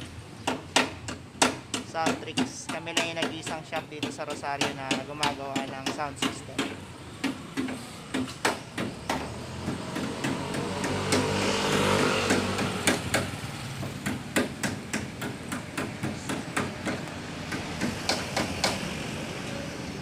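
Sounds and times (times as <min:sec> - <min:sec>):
engine: 0:06.8 - 0:20.0.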